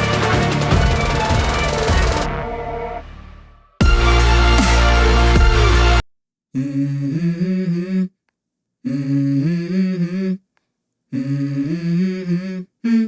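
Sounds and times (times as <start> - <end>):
wordless humming vocals: 6.6 - 8.1, 8.9 - 10.4, 11.1 - 13.0.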